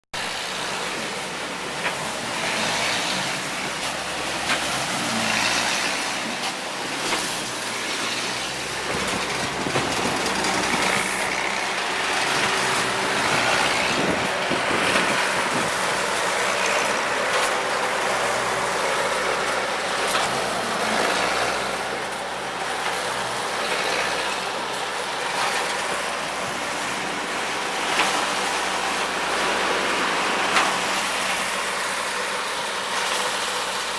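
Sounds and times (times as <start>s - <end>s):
engine-driven machinery running: 0.2s - 33.9s.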